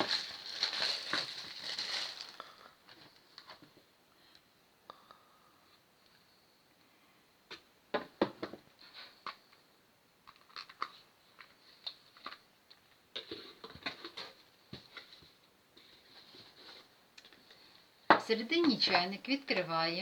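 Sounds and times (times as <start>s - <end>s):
packaging rustling and crinkling: 0.0s - 3.8s, 10.3s - 17.6s.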